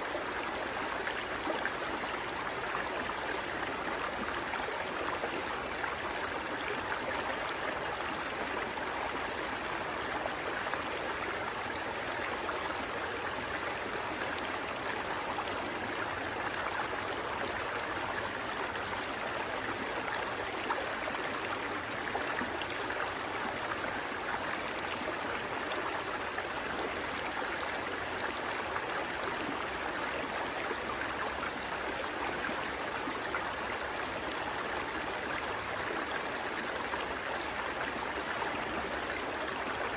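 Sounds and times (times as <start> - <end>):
flowing water: 0.0 - 39.9.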